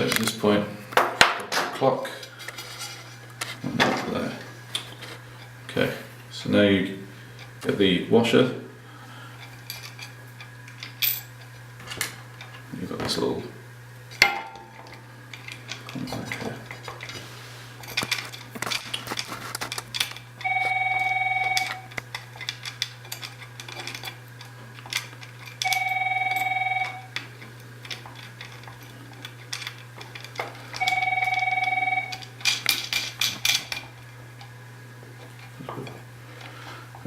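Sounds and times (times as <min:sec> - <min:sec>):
steady low hum: 0:00.0 - 0:37.0
small parts clicking and tapping: 0:17.8 - 0:34.5
telephone ringing: 0:20.4 - 0:22.0, 0:25.6 - 0:27.2, 0:30.7 - 0:32.4.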